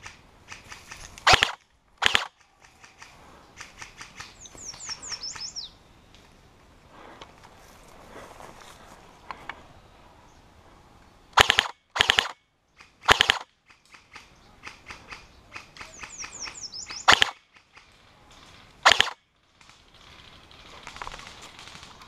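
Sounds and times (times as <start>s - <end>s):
airsoft rifle bursts: 0.0s - 5.5s, 11.4s - 17.9s, 18.8s - 19.2s
distant airsoft clicks: 0.0s - 6.3s, 11.4s - 18.0s.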